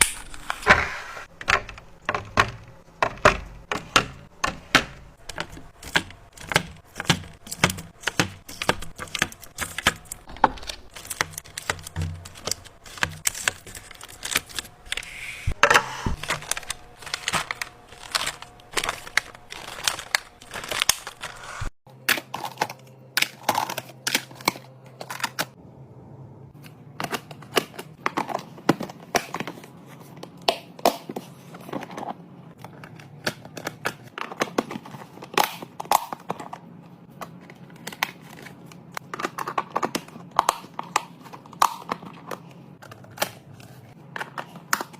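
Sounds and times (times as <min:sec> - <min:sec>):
plastic containers handled: 0:00.1 - 0:25.5.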